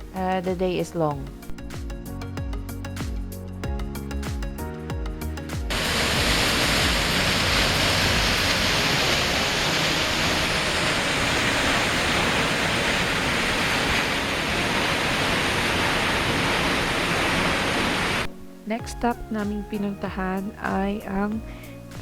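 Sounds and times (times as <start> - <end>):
music: 0.0 - 16.0, 18.2 - 22.0
waterfall roaring: 5.7 - 18.3.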